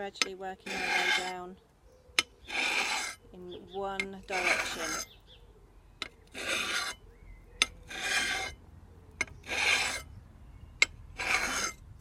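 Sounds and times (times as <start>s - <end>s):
whetstone scraping a blade: 0.2s - 1.5s, 2.2s - 3.2s, 4.0s - 5.2s, 6.0s - 7.0s, 7.6s - 8.6s, 9.2s - 10.1s, 10.8s - 11.8s.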